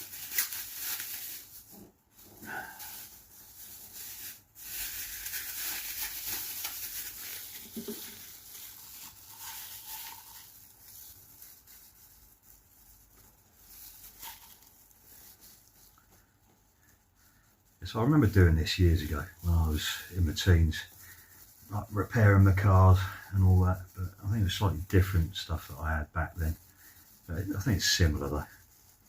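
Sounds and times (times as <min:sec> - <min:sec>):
wet rustling and tapping: 0:05.3 - 0:17.0.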